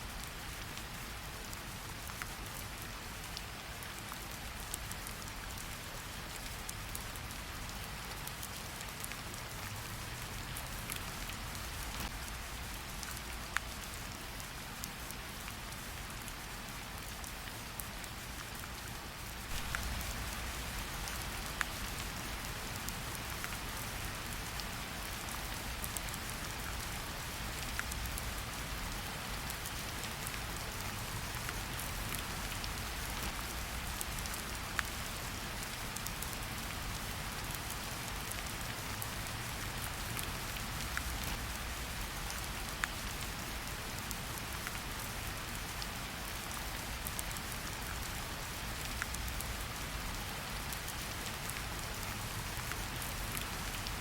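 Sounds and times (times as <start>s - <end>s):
rain hiss: 0.0s - 54.0s
fireplace crackles: 19.5s - 21.4s.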